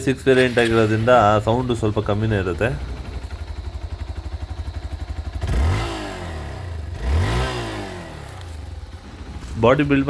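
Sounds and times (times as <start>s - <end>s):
motorcycle engine idling and revving: 0.0s - 10.0s.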